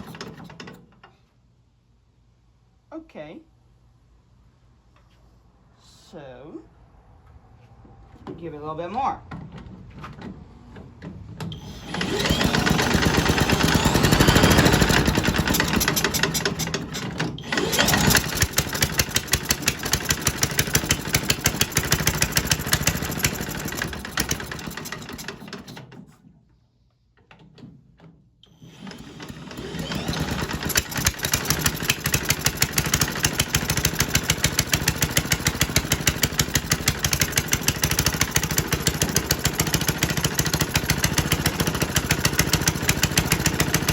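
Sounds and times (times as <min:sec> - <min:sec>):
small engine running: 0:11.6 - 0:25.7, 0:28.5 - 0:43.9.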